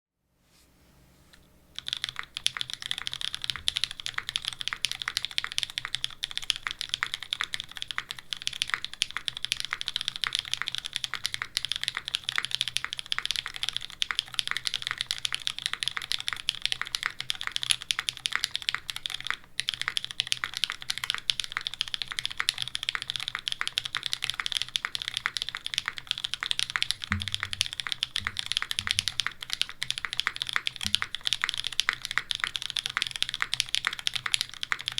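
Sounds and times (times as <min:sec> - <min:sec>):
mechanical keyboard typing: 0:01.8 - 0:34.9
deeper key thumps: 0:27.1 - 0:29.2.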